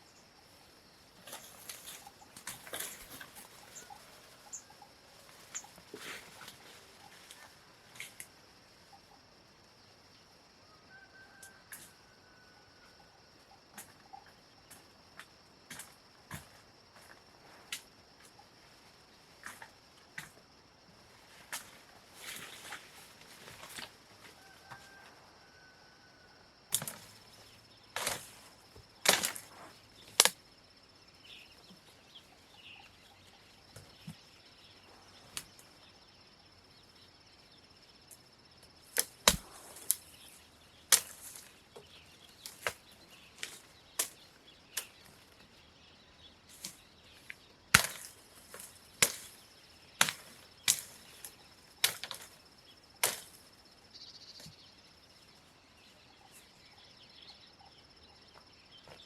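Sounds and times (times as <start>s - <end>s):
blade chopping wood: 39.0s - 39.6s, 47.8s - 48.1s.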